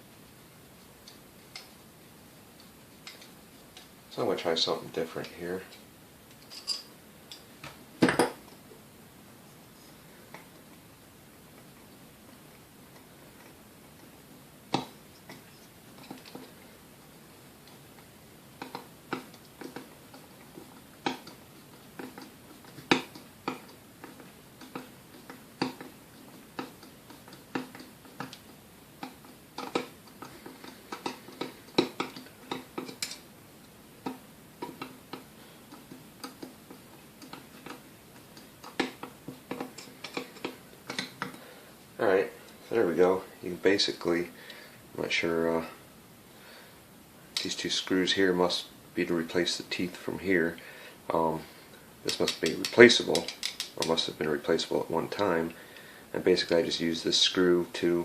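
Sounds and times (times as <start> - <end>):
metal clicks and taps: 3.0 - 3.9, 22.0 - 33.2, 34.0 - 41.4, 52.1 - 54.1.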